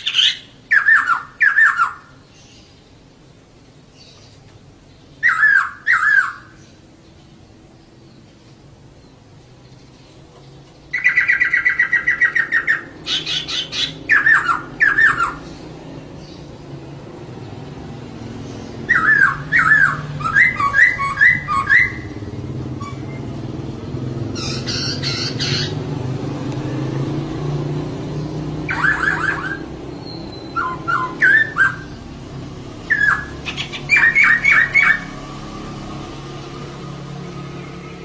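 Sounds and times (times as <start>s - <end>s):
harsh rasping bird call: 0.0s - 2.7s, 5.2s - 6.7s, 10.9s - 15.7s, 18.6s - 23.2s, 24.2s - 25.9s, 28.6s - 32.1s, 32.8s - 35.2s
bird calling in quick repeated notes: 5.2s - 6.6s.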